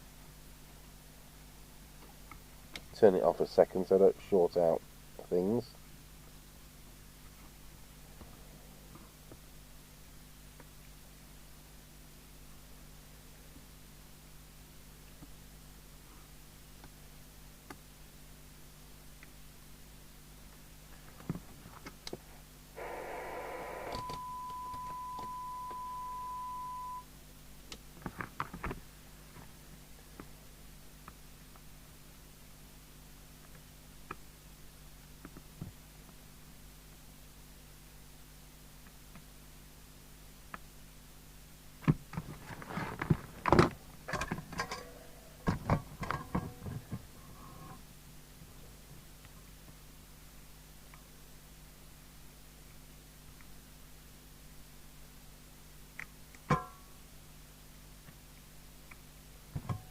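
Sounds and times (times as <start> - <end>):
radio receiver hiss: 22.7 - 27.0
steady test tone: 22.8 - 27.1.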